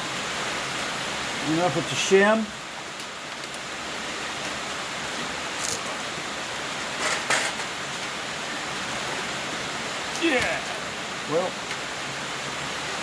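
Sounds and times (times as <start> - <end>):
heavy rain hissing: 0.0 - 13.0.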